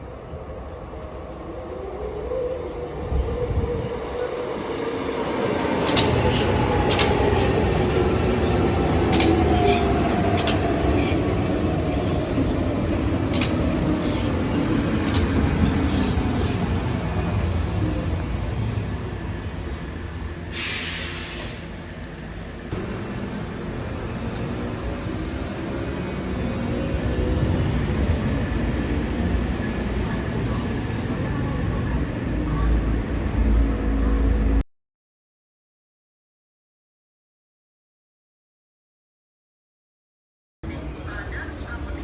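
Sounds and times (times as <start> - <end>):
wheels clicking over rail joints: 5.8 - 12.4, 13.1 - 16.2
burst of hiss: 20.5 - 21.7.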